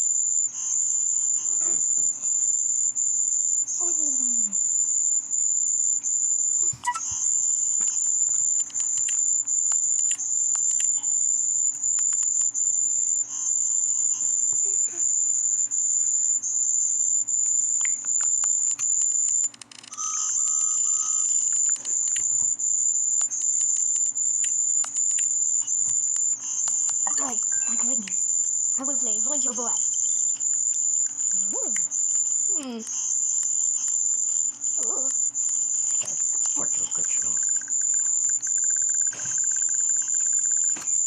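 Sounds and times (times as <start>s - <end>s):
shrill electronic tone: 6.4s - 8.4s, 19.9s - 22.5s
scattered clicks: 6.8s - 11.2s, 11.8s - 12.6s, 17.4s - 41.0s
short lower beeps: 19.9s - 21.5s.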